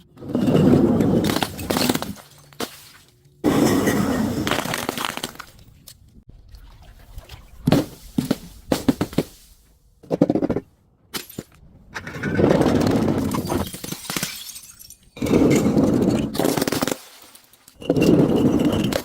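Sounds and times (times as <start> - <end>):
dense crunching and crackling: 0.1 - 6.2
glass cracking: 13.4 - 15.2.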